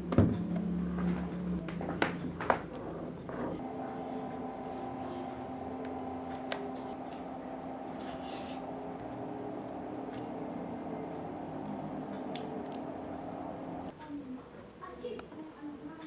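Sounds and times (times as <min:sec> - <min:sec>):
small motor whining: 0:03.5 - 0:13.9.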